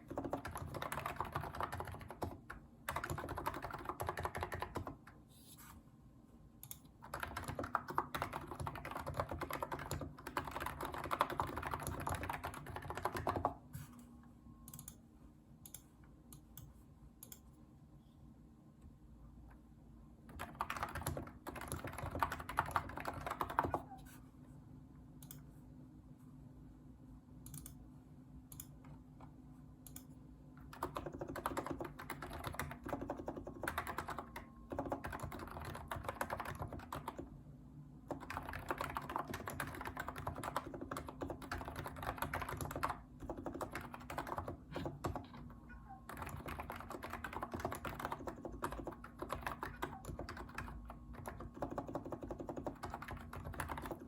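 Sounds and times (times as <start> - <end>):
keyboard typing: 0.0 - 5.2, 6.6 - 13.9, 20.3 - 24.0, 29.9 - 37.3, 38.1 - 54.0
faint steady hum: 0.0 - 54.0.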